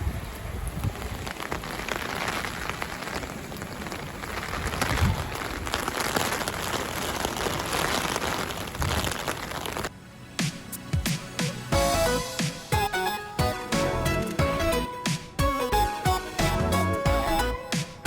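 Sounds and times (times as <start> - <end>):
heavy rain falling: 0.0 - 9.9.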